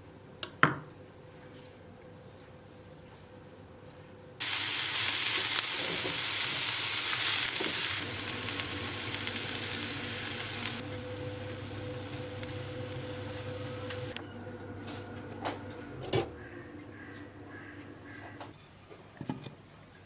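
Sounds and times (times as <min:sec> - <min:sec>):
food sizzling in a frying pan: 0:04.4 - 0:14.2.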